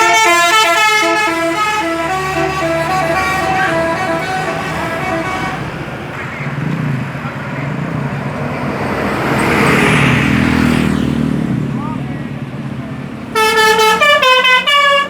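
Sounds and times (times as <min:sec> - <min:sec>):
musical air horn tune: 0:00.0 - 0:05.8, 0:13.4 - 0:15.0
bus engine and road noise: 0:00.0 - 0:15.0.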